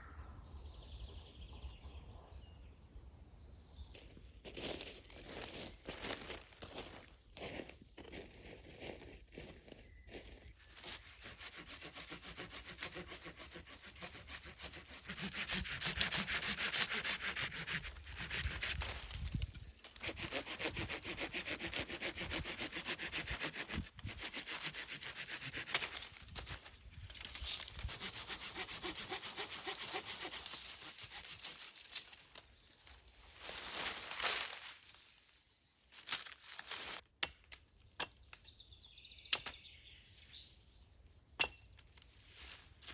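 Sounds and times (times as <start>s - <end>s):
hand saw cutting wood: 10.8s - 19.0s, 19.8s - 26.6s, 27.2s - 32.2s.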